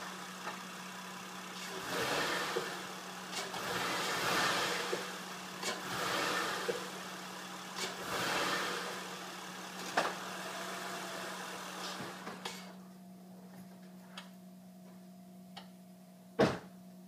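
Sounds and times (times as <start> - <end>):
car engine revving: 0.0 - 12.4.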